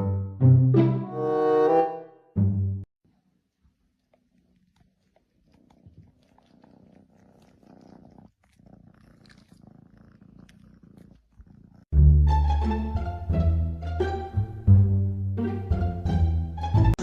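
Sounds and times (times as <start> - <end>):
cat purring quietly: 3.1 - 11.9.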